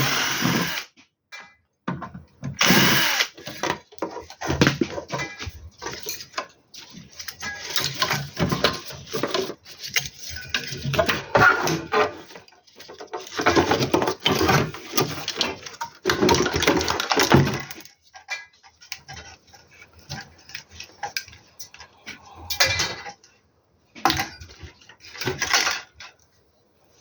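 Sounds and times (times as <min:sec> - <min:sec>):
metal tools clattering: 0:03.4 - 0:21.9.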